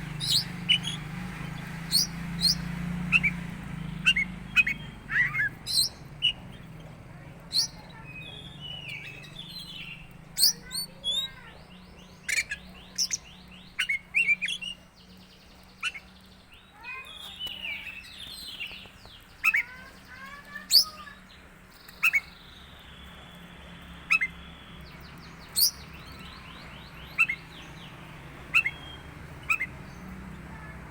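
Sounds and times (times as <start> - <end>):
bird singing chirps and trills: 0.0 - 30.9.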